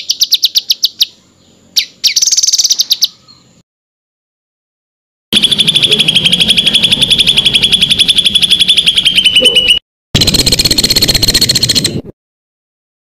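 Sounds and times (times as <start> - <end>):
songbird rapid trill: 0.0 - 3.6, 5.4 - 12.0.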